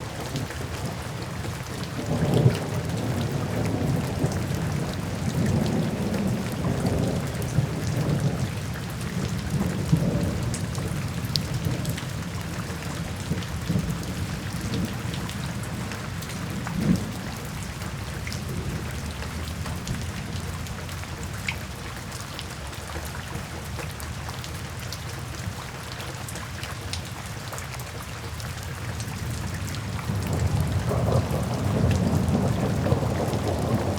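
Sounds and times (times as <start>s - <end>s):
heavy rain: 0.0s - 33.9s
rolling thunder: 1.6s - 17.8s, 29.2s - 33.9s
thunder crack: 30.1s - 33.9s.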